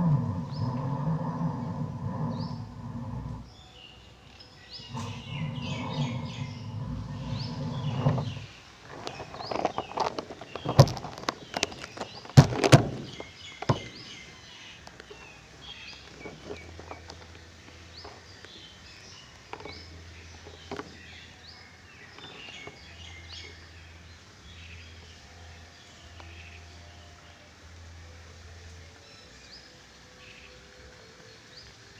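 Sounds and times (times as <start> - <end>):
small birds chirping: 0.0 - 27.5
low steady hum: 0.0 - 31.9
sharp knocks and thumps: 7.6 - 14.2.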